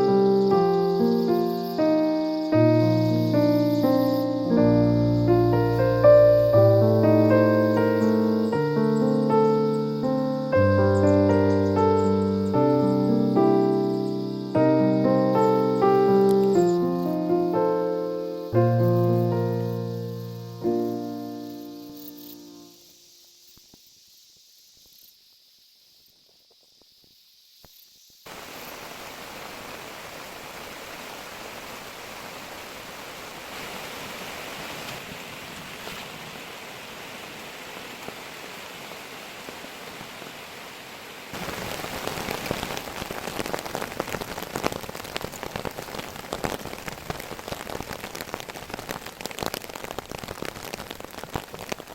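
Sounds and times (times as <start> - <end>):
steady rain falling: 0.0 - 26.5, 28.1 - 51.9
raindrops striking a surface: 28.3 - 51.9.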